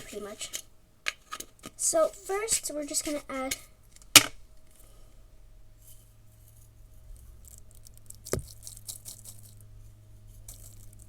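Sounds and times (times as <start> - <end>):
glitter rattling in container: 7.2 - 9.7, 10.4 - 11.0.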